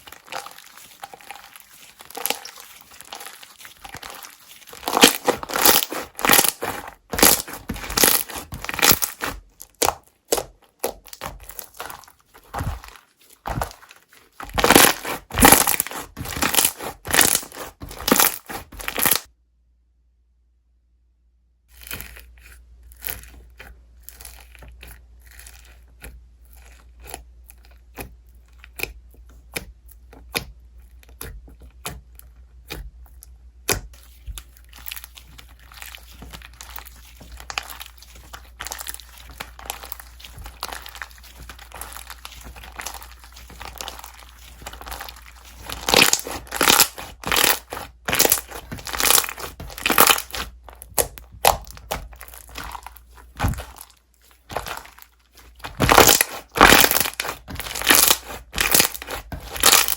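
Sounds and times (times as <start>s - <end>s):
slime popping and crackling: 0.0s - 19.3s, 33.6s - 59.9s.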